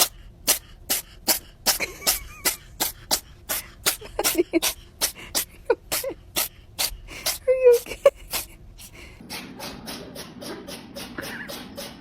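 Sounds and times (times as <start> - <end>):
cat sneezing: 0.0 - 9.0.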